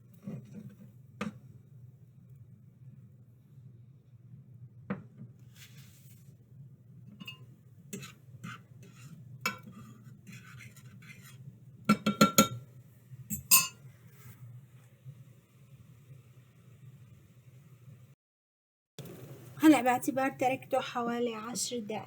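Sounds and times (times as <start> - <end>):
kitchen utensils clinking: 7.2 - 7.4, 11.9 - 12.6, 13.3 - 13.8.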